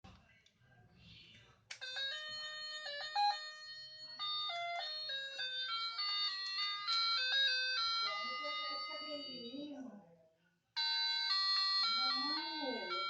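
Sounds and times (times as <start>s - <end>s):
toy electronic beeping tune: 1.8s - 9.6s, 10.8s - 13.0s.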